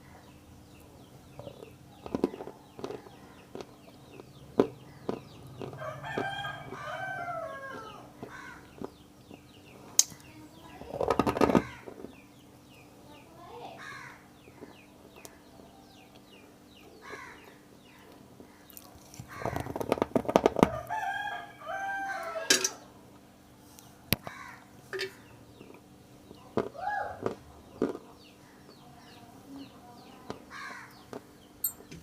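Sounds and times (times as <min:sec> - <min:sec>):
small birds chirping: 0:00.0 - 0:32.0
chickens clucking: 0:00.7 - 0:12.4
rooster crowing: 0:05.7 - 0:08.6, 0:20.6 - 0:22.9.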